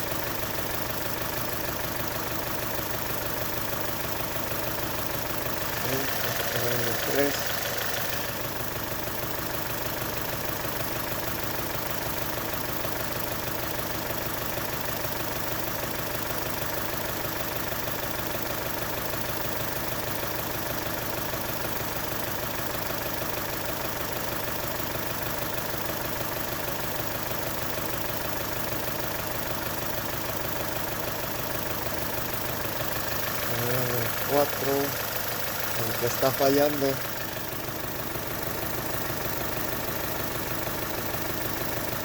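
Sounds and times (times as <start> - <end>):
car engine idling: 0.0 - 42.0.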